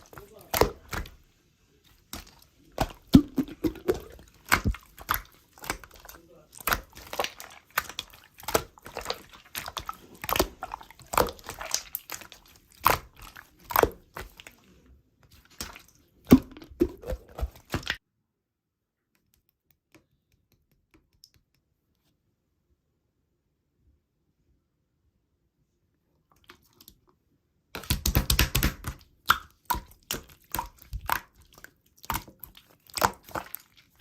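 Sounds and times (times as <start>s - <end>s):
slime squelching: 0.0s - 18.0s, 26.3s - 34.0s.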